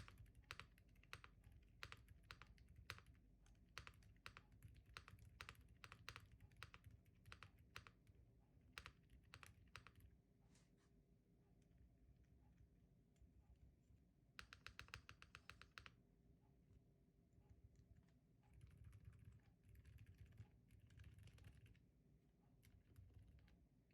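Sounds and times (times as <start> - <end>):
soft keyboard keystrokes: 0.0 - 10.2, 14.4 - 16.0, 17.5 - 21.9.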